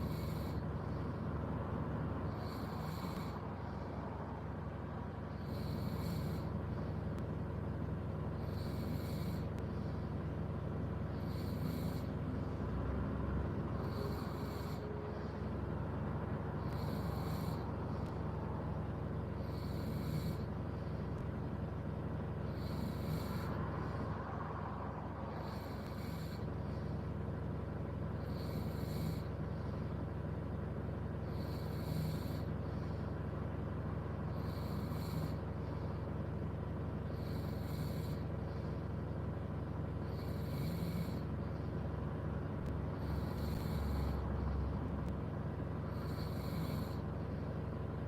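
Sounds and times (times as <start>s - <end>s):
person snoring: 0.0s - 0.6s, 2.2s - 3.6s, 5.3s - 6.5s, 8.4s - 9.5s, 11.1s - 12.2s, 13.7s - 15.3s, 16.6s - 18.1s, 19.4s - 20.5s, 22.5s - 24.4s, 25.3s - 26.5s, 28.2s - 29.3s, 31.2s - 32.5s, 34.3s - 35.9s, 37.1s - 38.3s, 40.0s - 41.3s, 43.0s - 44.7s, 45.9s - 47.0s
steady low hum: 0.0s - 48.0s.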